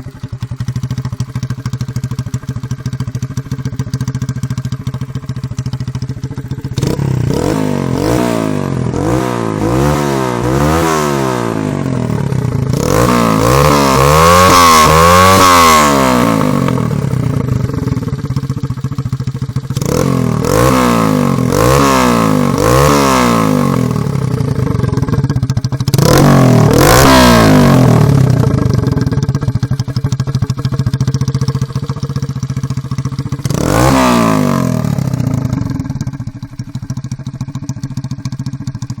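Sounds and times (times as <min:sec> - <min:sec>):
motorcycle engine revving: 0:00.0 - 0:39.0.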